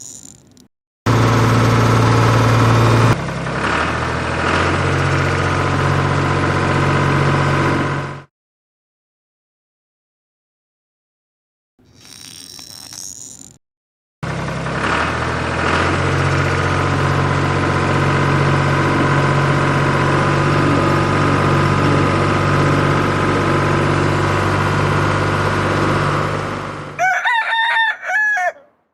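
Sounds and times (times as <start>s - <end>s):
tractor engine idling: 1.1s - 8.2s
rooster crowing: 27.0s - 28.8s.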